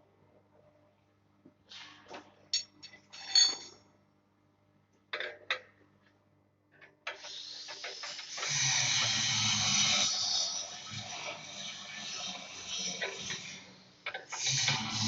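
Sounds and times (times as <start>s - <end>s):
metal tools clinking: 2.6s - 3.8s.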